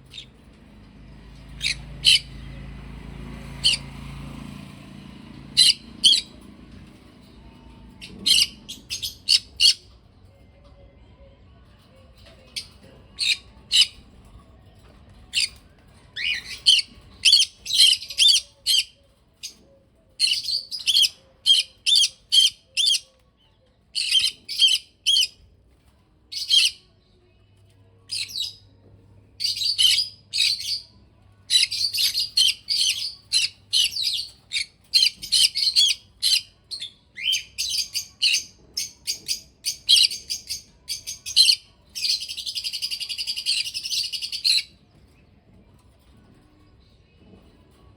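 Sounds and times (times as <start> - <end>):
parrots chirping: 1.2 - 6.9, 7.9 - 9.9, 12.6 - 14.2, 16.2 - 19.6, 20.2 - 23.1, 23.9 - 25.4, 26.3 - 26.9, 29.4 - 44.8.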